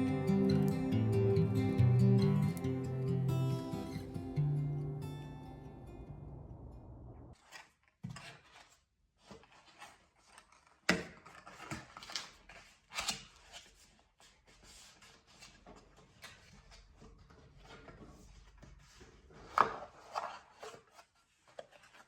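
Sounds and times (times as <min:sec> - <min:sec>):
strummed guitar tune: 0:00.0 - 0:07.2.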